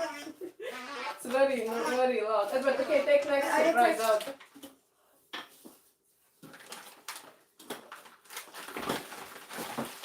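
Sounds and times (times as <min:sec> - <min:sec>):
plastic packaging crinkling: 0:06.4 - 0:10.0.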